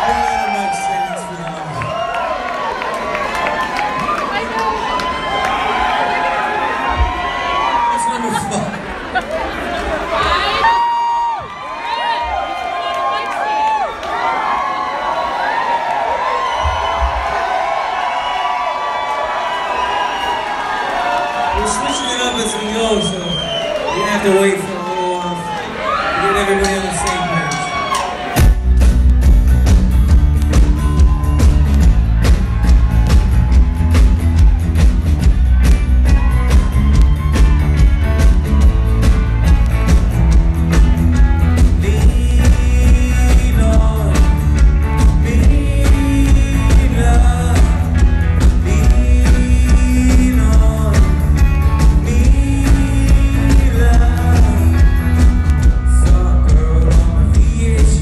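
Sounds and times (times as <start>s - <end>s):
rock band playing live: 26.2s - 58.0s
steady drum beat: 28.3s - 58.0s.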